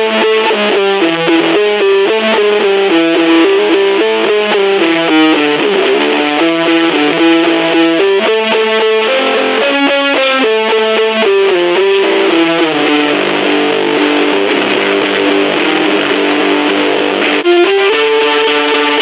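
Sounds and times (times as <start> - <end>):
distorted electric guitar: 0.0 - 19.0.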